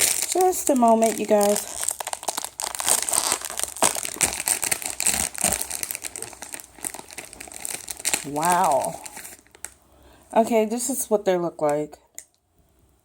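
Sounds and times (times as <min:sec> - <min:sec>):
plastic wrapper crinkling: 0:00.0 - 0:09.8.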